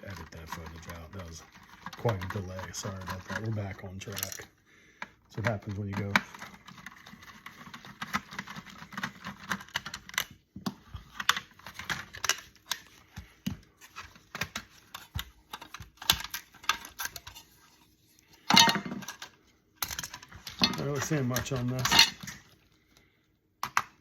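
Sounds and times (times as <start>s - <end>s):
clicks and rattles of parts: 0.0s - 24.0s
parts clattering: 8.1s - 22.6s.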